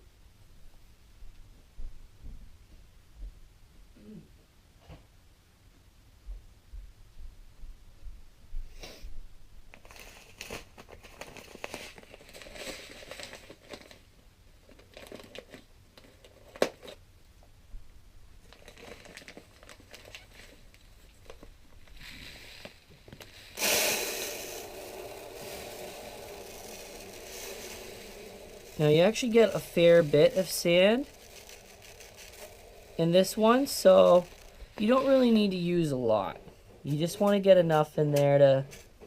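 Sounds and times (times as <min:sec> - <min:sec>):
plastic packaging crinkling and tearing: 0:09.7 - 0:17.0, 0:18.5 - 0:35.6
sand pouring into tank: 0:22.0 - 0:35.6.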